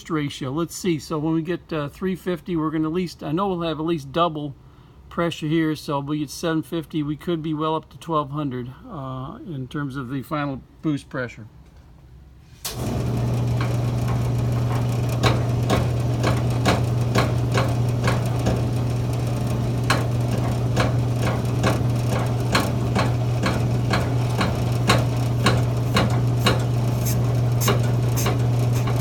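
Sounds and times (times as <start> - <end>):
electric motor humming: 12.7 - 29.0.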